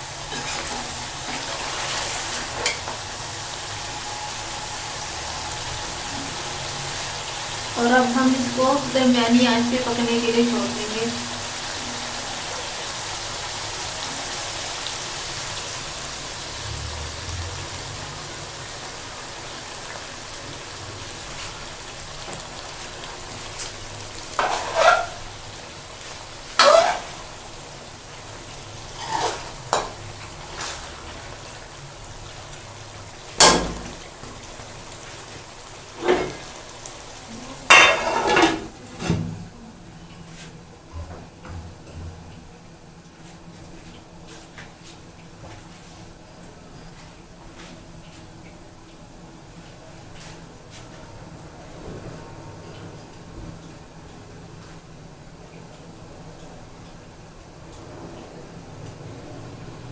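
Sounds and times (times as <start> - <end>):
gravy sizzling in a pot: 0.0 - 39.3
utensil scraping a pot: 0.3 - 2.8, 24.4 - 25.3, 26.6 - 27.3, 28.9 - 29.9.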